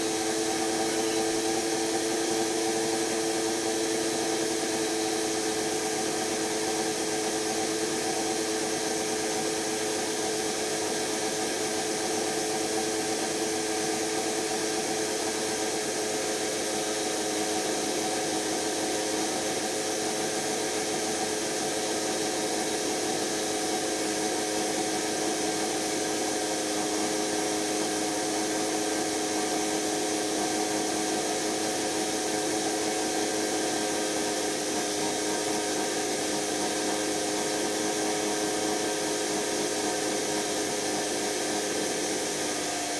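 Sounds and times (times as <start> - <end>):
washing machine motor whining: 0.0 - 4.4.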